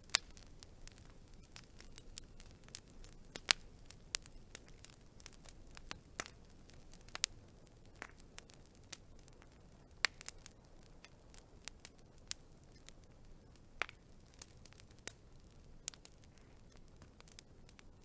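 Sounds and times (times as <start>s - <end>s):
faint low hiss: 0.0s - 18.0s
wood fire crackling: 0.0s - 18.0s.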